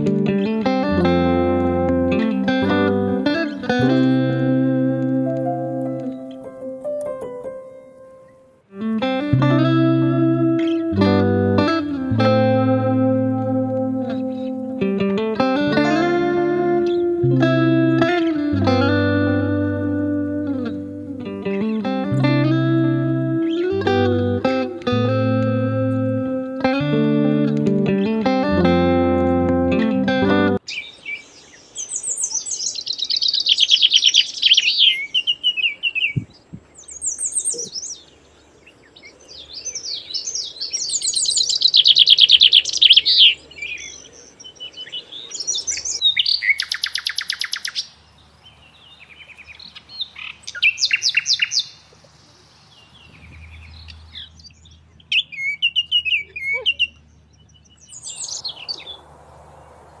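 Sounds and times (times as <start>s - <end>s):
songbirds twittering: 10.1s - 26.7s, 29.2s - 60.0s.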